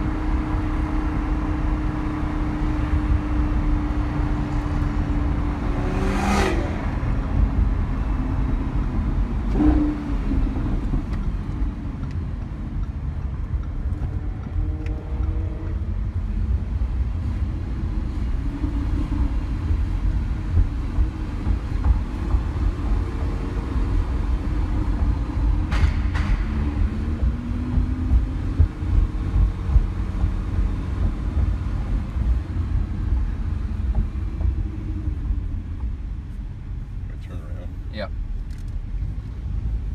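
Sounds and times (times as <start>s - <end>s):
car engine and tyre rumble: 0.0s - 39.9s
sharp knocks: 25.6s - 30.0s.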